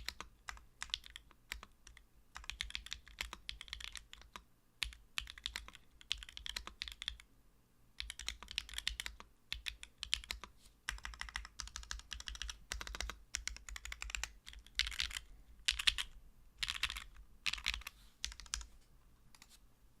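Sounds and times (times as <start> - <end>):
mechanical keyboard typing: 0.0 - 7.2, 8.0 - 18.7.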